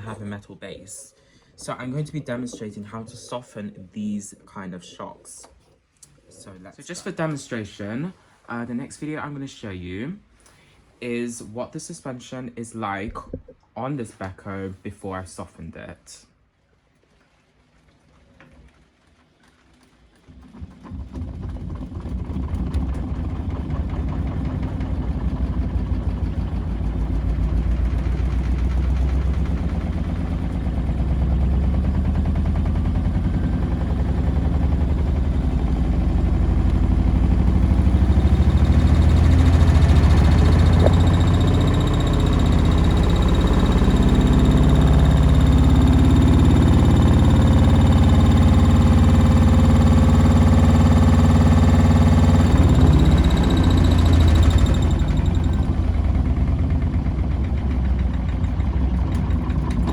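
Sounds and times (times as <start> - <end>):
washing machine spin rumble: 20.2 - 59.9.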